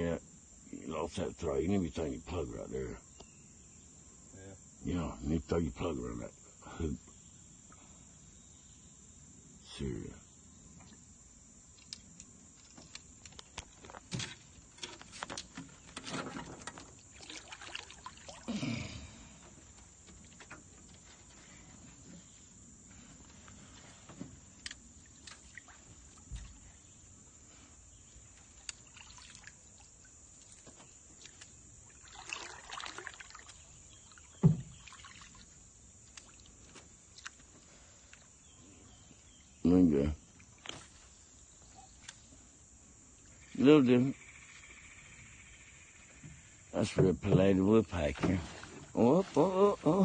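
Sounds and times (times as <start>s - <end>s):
crickets droning: 0.0s - 50.0s
water sounds: 16.2s - 20.6s, 24.8s - 26.8s, 28.4s - 38.3s
small knocks on boat: 34.4s - 34.9s.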